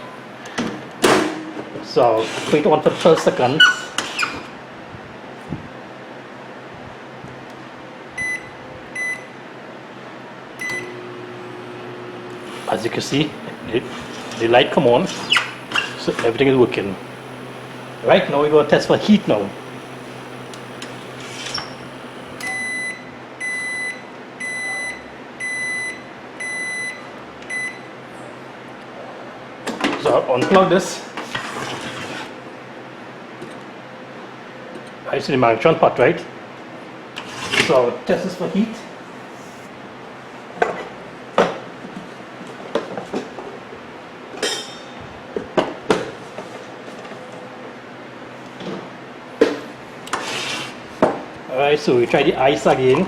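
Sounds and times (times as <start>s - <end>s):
microwave oven beeps: 0.0s - 0.3s, 8.2s - 9.4s, 10.6s - 28.0s.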